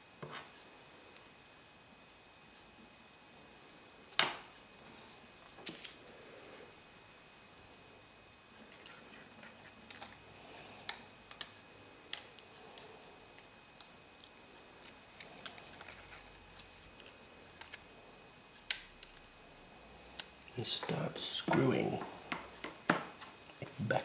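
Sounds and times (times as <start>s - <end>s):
small tools and parts clicking: 14.8s - 17.9s, 18.6s - 19.3s.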